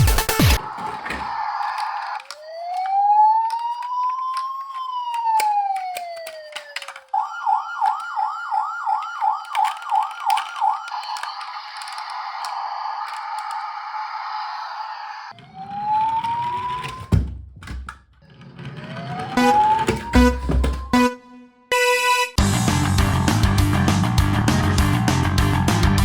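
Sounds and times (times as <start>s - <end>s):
toy electronic siren: 0.4s - 17.1s, 18.2s - 22.4s
small clicks: 1.6s - 13.8s.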